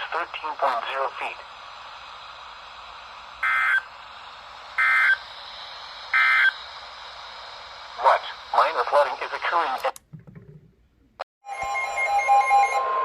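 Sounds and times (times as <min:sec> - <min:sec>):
radio hiss: 0:00.0 - 0:10.0.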